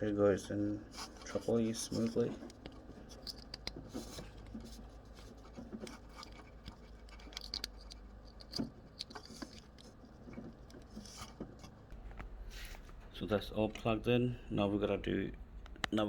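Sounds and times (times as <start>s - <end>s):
wires rustling: 0.0s - 13.1s
plastic connector clicks: 2.5s - 3.8s.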